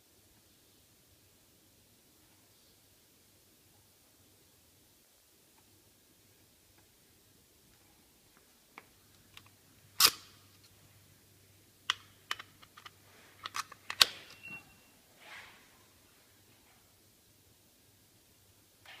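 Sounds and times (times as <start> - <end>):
short high beep: 14.3 - 15.0.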